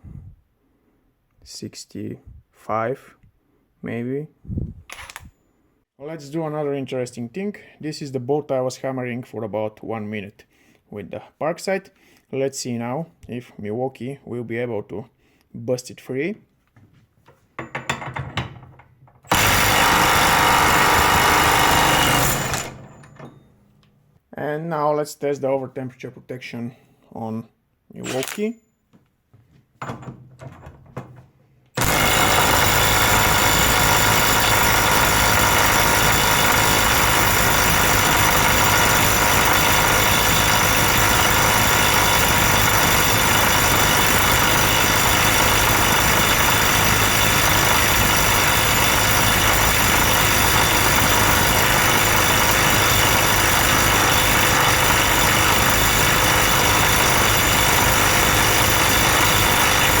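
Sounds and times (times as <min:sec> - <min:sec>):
impact wrench hammering: 0:17.6 - 0:18.6, 0:19.3 - 0:23.0, 0:31.8 - 1:00.0.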